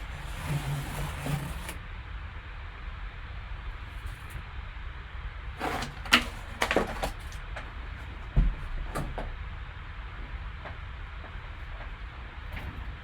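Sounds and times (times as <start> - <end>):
steady low hum: 0.0 - 13.0
packaging clicks and scrapes: 5.6 - 7.5
dull thump: 8.3 - 9.4.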